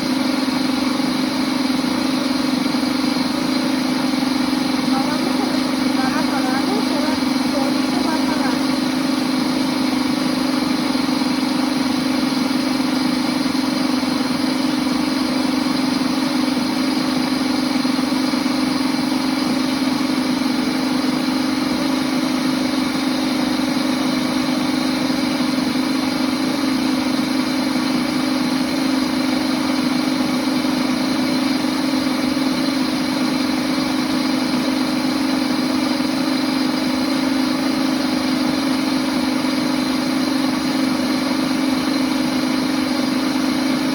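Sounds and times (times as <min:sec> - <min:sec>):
blender motor running: 0:00.0 - 0:43.9.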